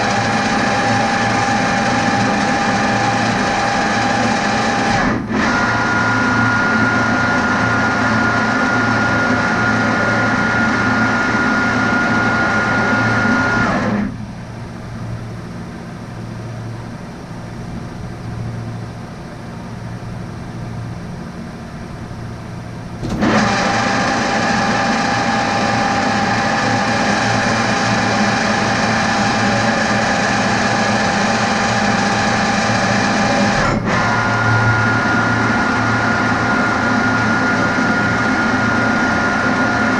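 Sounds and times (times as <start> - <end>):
metal lathe running: 0.0 - 14.0, 23.0 - 39.9
high whine: 0.0 - 39.9.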